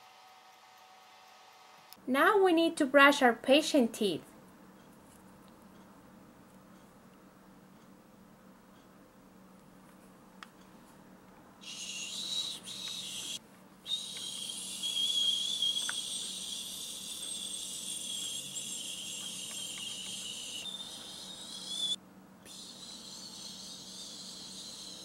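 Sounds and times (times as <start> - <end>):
high-pitched toy motor whir: 11.6 - 25.0.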